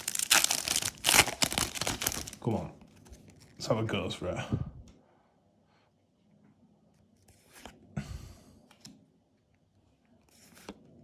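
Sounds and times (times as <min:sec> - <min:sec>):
cards rustling and clicking: 0:00.0 - 0:03.6.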